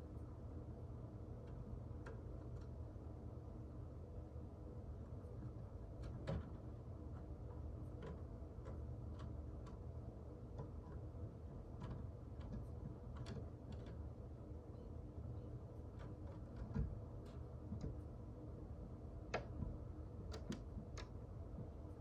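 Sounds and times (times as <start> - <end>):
low steady hum: 0.0 - 22.0
light ticks and taps: 5.4 - 14.1, 19.3 - 21.9.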